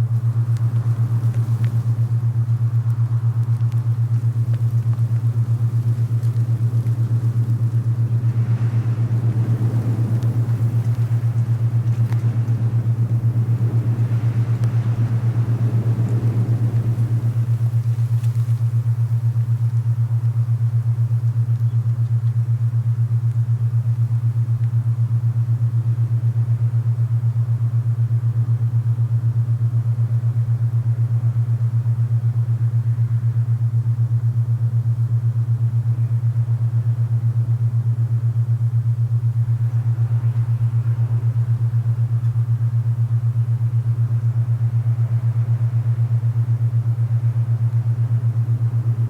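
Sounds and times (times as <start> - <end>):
soft rushing wind: 0.0 - 21.8, 38.8 - 49.0
pulsing low hum: 0.0 - 49.0.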